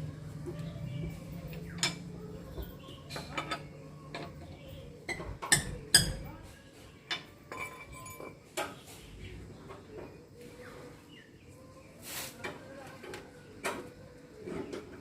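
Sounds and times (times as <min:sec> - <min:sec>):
metal tools clinking and clanking: 0:02.7 - 0:06.3, 0:07.1 - 0:08.8.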